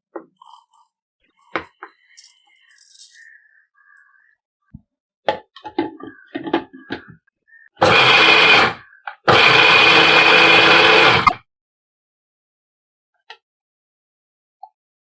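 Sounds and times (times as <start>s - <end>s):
candy clicking into grinder jar: 0.4s - 3.3s
mixer grinder running: 7.8s - 11.4s.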